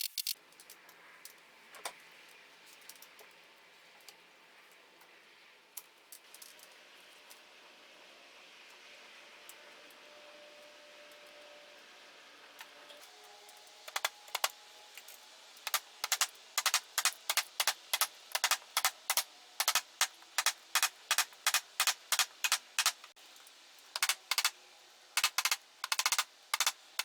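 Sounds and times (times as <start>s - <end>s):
short sharp clicks: 15.7s - 23.2s, 25.2s - 26.8s.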